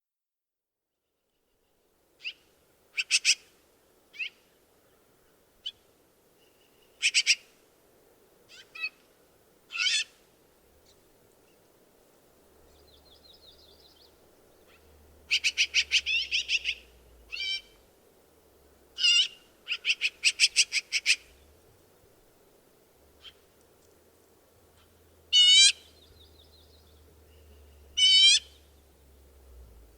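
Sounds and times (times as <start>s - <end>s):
magpie calling: 3.0s - 3.5s, 7.0s - 7.5s, 8.5s - 9.0s, 9.7s - 10.2s, 14.6s - 17.8s, 19.0s - 21.4s, 23.2s - 23.5s, 24.8s - 26.1s, 28.0s - 28.7s.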